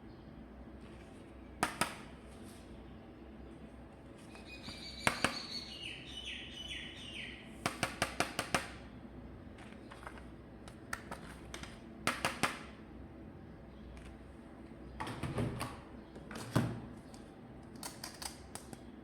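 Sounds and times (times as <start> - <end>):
sharp plastic clicks: 10.0 - 12.7, 17.1 - 18.9.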